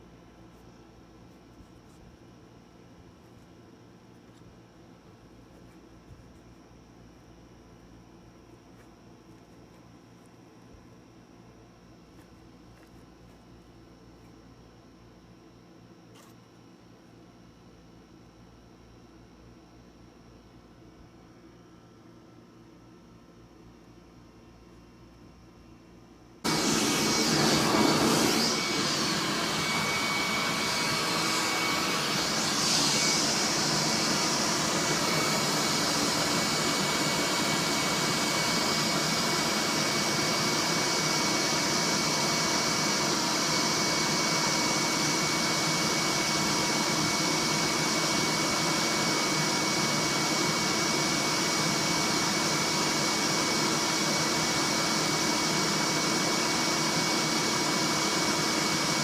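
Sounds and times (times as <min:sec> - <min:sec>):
vacuum cleaner running: 0:26.4 - 0:59.0.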